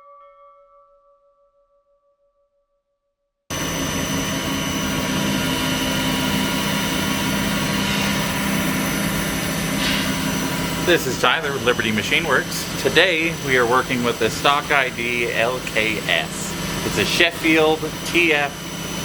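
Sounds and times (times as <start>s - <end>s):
grinder whining and humming: 3.5s - 19.0s.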